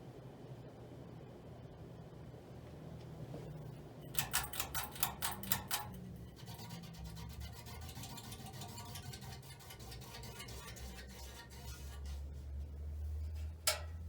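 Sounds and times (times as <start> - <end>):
ceiling fan humming and ticking: 0.0 - 14.0.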